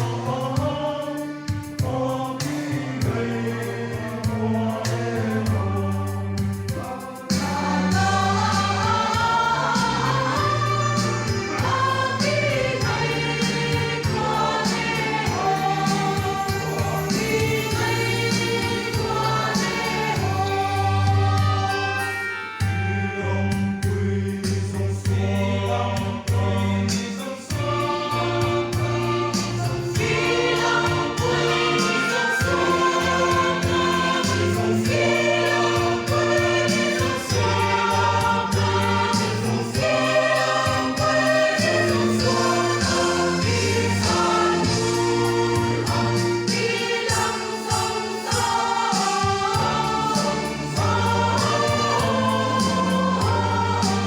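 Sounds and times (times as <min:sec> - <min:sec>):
choir singing: 0:00.0 - 0:54.0
instrumental backing with bass and beat: 0:00.0 - 0:54.0.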